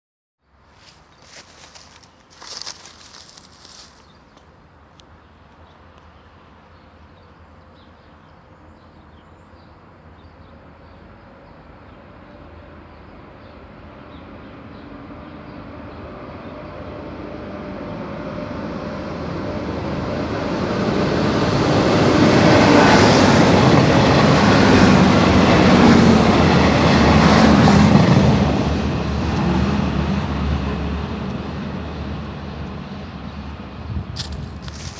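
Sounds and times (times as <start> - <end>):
diesel locomotives rumbling: 11.8 - 34.9.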